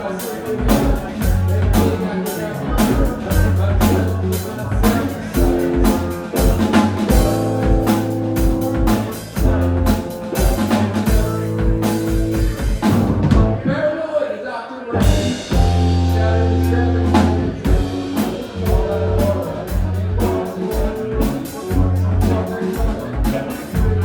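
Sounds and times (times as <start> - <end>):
live band playing a groove: 0.0 - 13.7, 14.9 - 24.0
steady drum beat: 0.0 - 13.7, 15.0 - 24.0
heavy bass note: 15.0 - 20.4.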